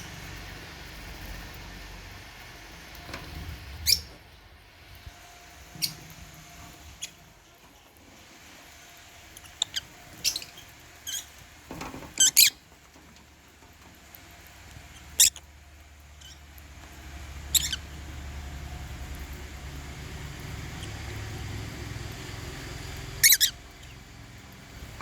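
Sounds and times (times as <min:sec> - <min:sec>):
lovebirds chirping: 0:09.4 - 0:11.4, 0:17.5 - 0:17.9.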